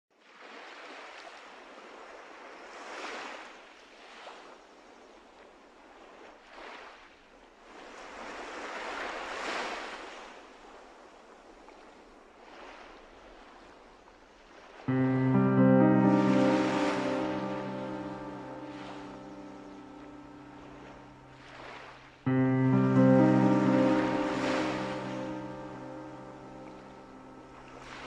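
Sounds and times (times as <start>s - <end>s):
ocean waves washing in: 14.8s - 28.0s.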